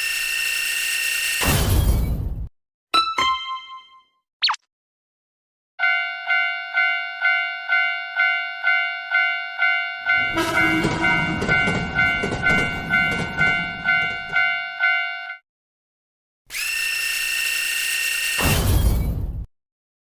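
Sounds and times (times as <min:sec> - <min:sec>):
crossing warning bell ringing: 0:05.8 - 0:15.4
horn sounding steadily: 0:10.1 - 0:14.6
train passing with rumbling clatter: 0:10.2 - 0:14.5.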